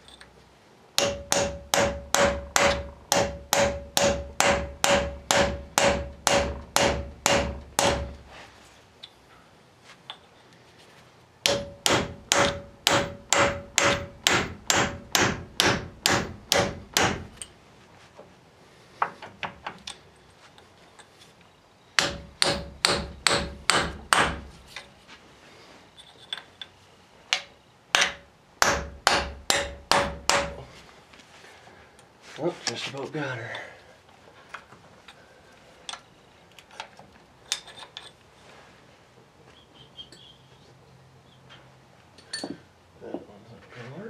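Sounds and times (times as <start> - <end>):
hammer striking steel chisel: 1.0 - 8.2, 11.4 - 17.5, 22.0 - 24.5, 27.4 - 30.6.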